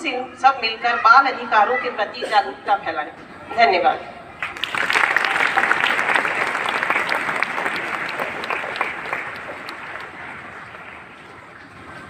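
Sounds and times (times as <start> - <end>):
audience applauding: 4.4 - 11.6.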